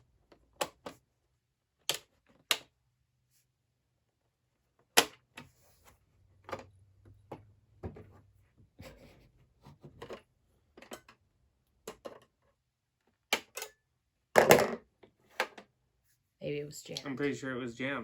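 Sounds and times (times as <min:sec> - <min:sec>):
puzzle box clicks and knocks: 0:14.4 - 0:14.8.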